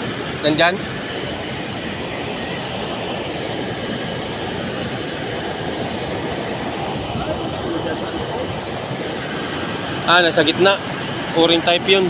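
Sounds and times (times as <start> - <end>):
air conditioning unit running: 0.0 - 12.0.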